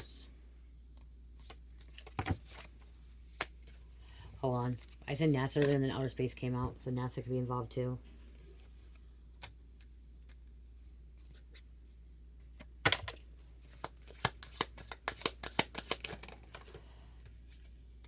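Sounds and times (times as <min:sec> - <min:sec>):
cards being shuffled: 0:00.9 - 0:03.8, 0:04.6 - 0:06.0, 0:12.6 - 0:16.8
crisp card snaps and flicks: 0:13.8 - 0:16.6.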